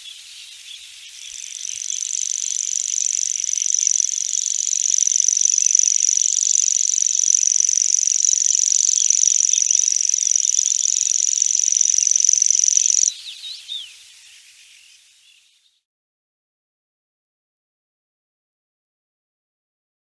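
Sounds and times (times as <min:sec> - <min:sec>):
grasshopper buzzing: 0:01.3 - 0:13.1.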